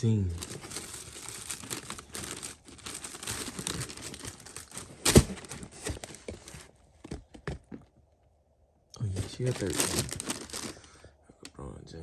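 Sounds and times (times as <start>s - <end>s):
paper crinkling and rustling: 0.3s - 7.8s, 9.0s - 11.0s.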